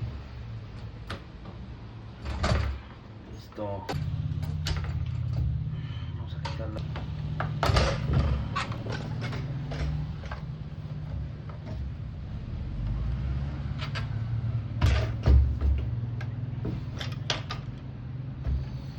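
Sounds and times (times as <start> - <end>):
steady low hum: 0.0 - 12.8.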